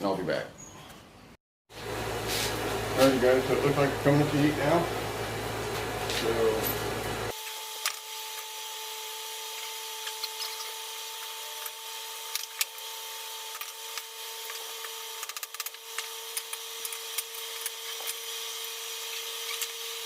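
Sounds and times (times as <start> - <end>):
forge blower humming: 1.7 - 20.0
sharp clicks and crackles: 13.5 - 18.2.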